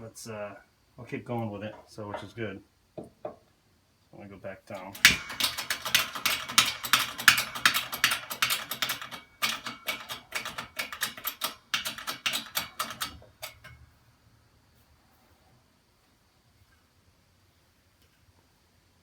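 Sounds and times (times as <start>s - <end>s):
hydraulic press rapid clicking: 4.8s - 13.8s.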